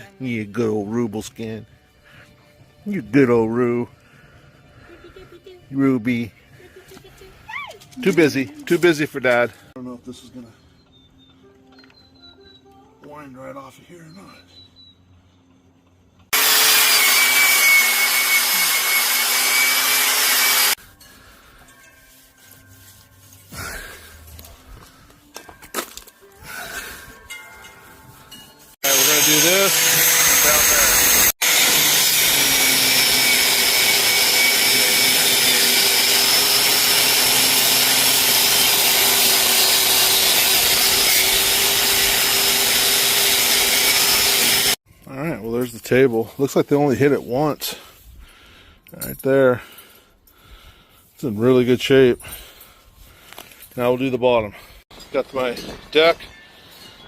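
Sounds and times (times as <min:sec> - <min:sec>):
power tool rasping and whining: 0:16.3 - 0:20.8, 0:28.0 - 0:44.8.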